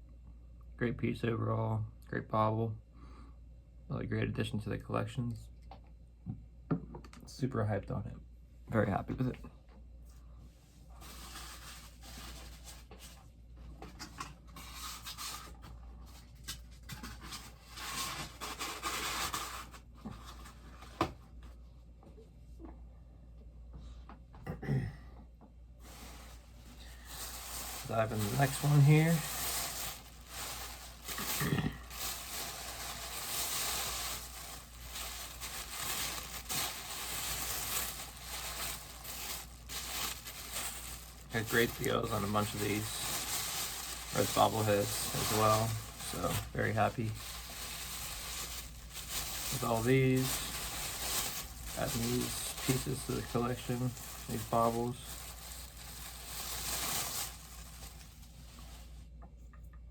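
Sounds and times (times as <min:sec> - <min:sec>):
boxes and packaging rustling: 0:11.0 - 0:13.2, 0:13.8 - 0:21.2, 0:25.8 - 0:59.0.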